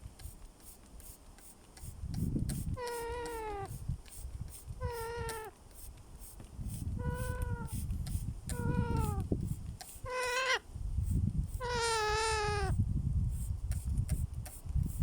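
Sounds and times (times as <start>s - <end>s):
baby parrot calling: 10.0s - 10.6s, 11.6s - 12.7s.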